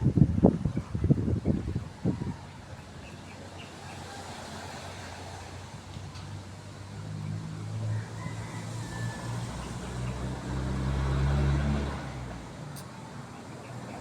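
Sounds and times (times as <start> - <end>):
vehicle engine passing by: 3.7 - 14.0.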